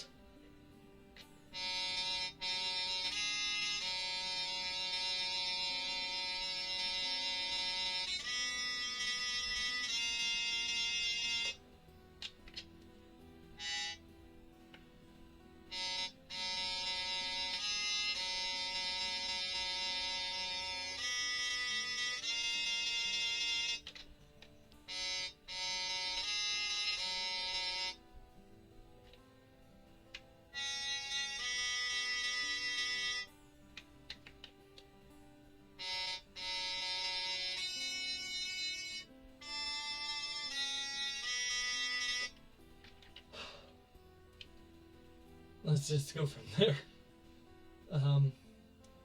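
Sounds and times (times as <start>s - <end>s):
digital wind instrument long notes: 1.5s - 11.7s, 13.6s - 14.2s, 15.6s - 24.0s, 24.8s - 28.4s, 30.5s - 33.4s, 35.1s - 43.8s.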